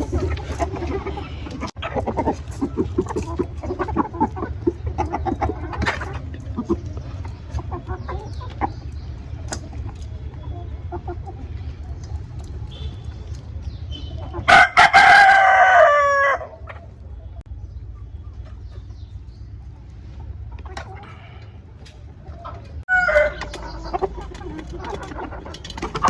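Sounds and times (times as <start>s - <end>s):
chickens clucking softly: 0.0s - 26.0s
rooster crowing: 14.5s - 16.6s, 22.9s - 23.5s.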